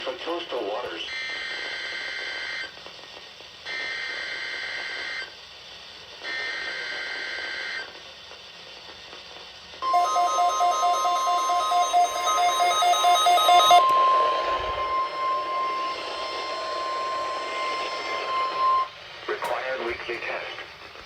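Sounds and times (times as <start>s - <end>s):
rapidly pulsing beep: 9.8s - 18.9s
screeching digital data bursts: 9.8s - 18.9s
steady high alert tone: 9.8s - 18.9s.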